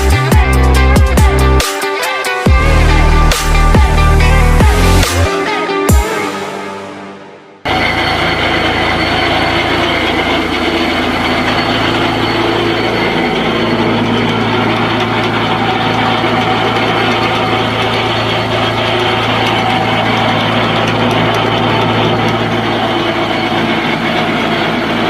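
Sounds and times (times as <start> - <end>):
wood chipper running: 7.6 - 25.0.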